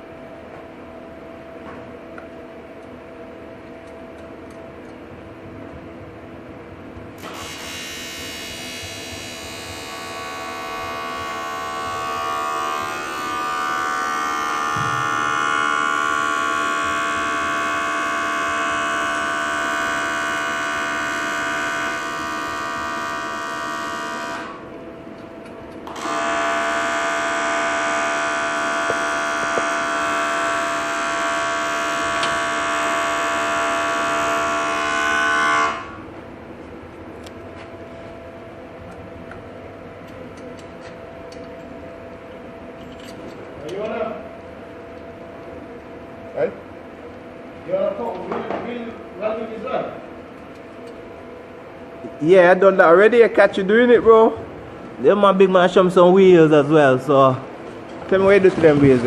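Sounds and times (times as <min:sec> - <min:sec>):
power tool whining: 0:07.2 - 0:24.6, 0:25.9 - 0:36.0.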